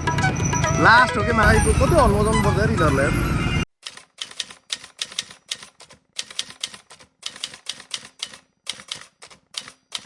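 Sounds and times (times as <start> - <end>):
typewriter keys clacking: 3.8 - 10.0.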